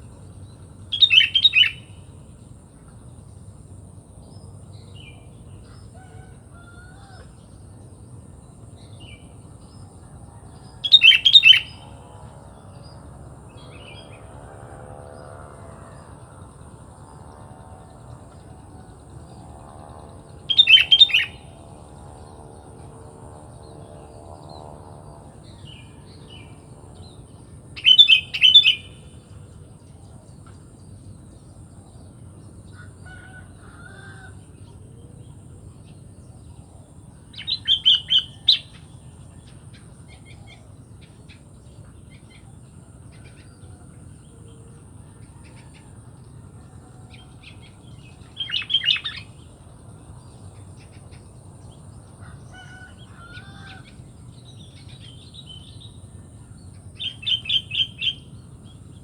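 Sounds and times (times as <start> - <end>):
bird chattering calls: 10.8 - 11.8, 20.5 - 21.5, 27.8 - 29.0, 48.4 - 49.3.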